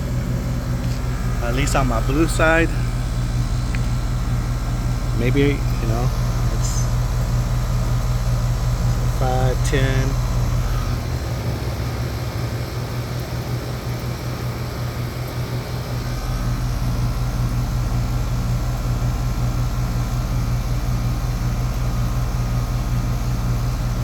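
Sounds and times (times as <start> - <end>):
deep rumble: 0.0 - 12.6
air conditioning unit humming: 0.0 - 24.0.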